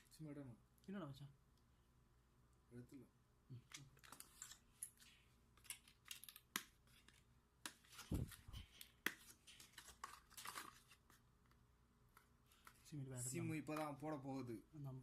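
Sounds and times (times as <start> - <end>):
hands handling phone and packaging: 3.7 - 13.0.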